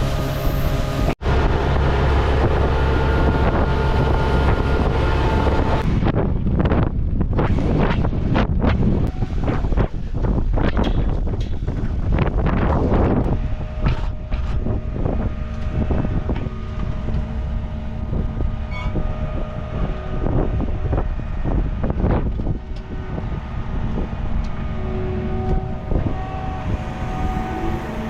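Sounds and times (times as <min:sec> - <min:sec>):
wind buffeting microphone: 0:00.0 - 0:28.0
vehicle engine running: 0:11.7 - 0:28.0.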